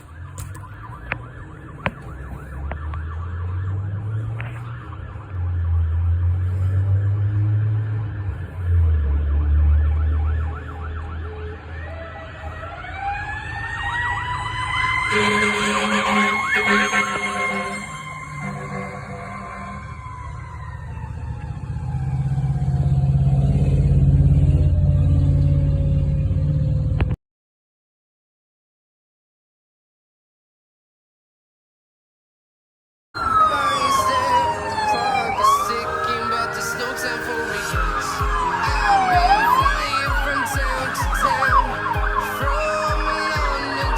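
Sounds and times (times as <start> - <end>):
fire engine siren yelping: 0.0 - 26.1, 33.2 - 43.9
loud low drone: 33.6 - 43.9.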